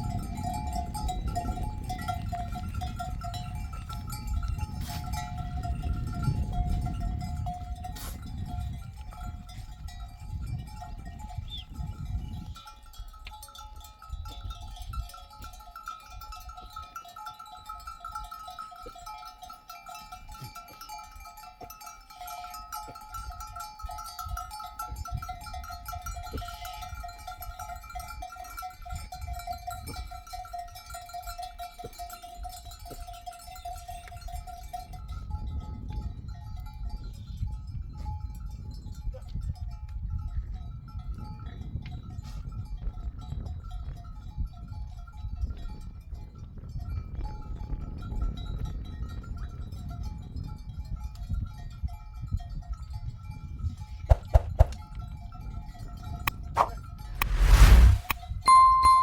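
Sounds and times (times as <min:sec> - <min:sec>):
sheep bells ringing and clinking: 0:00.0 - 0:57.1, 0:58.5 - 0:59.0
low rumble: 0:56.6 - 0:58.8.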